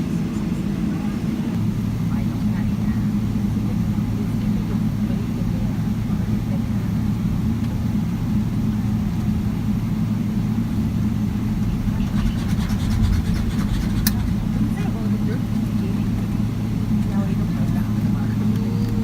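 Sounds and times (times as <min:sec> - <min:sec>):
airliner cabin engine drone: 0:00.0 - 0:19.0
faint rattling clicks: 0:12.0 - 0:14.9.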